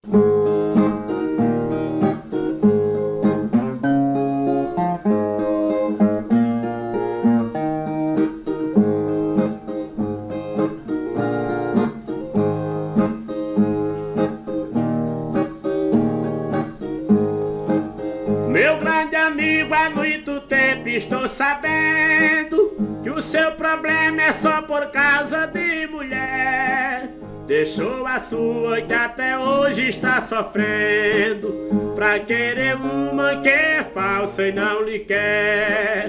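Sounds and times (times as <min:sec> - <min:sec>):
plucked guitar melody: 0:00.0 - 0:36.0
man singing: 0:18.5 - 0:36.0.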